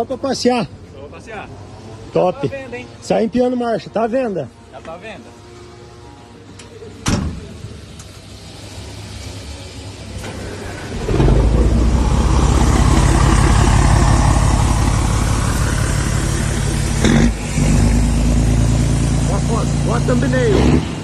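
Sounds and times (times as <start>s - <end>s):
diesel truck engine rumbling: 6.9s - 21.0s.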